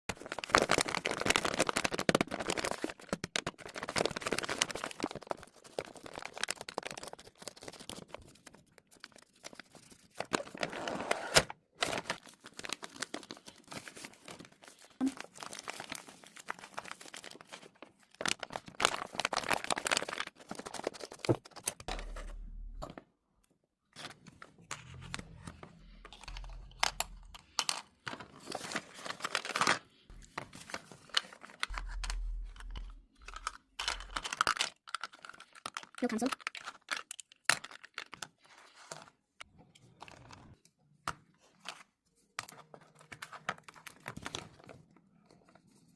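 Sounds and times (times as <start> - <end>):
paper crinkling and tearing: 0.1 - 22.3, 24.8 - 39.0.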